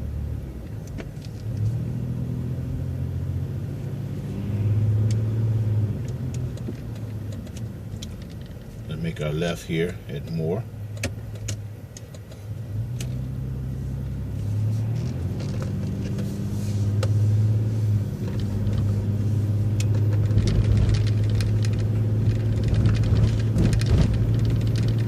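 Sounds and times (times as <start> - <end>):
bus engine droning: 0.0 - 25.0
light clicks and rattles: 6.0 - 9.0, 19.8 - 25.0.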